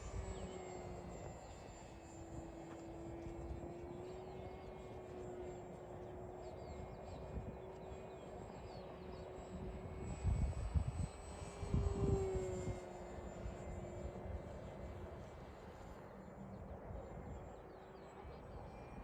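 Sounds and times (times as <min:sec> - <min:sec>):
model airplane motor droning: 0:00.0 - 0:19.0
wind buffeting microphone: 0:09.0 - 0:15.6.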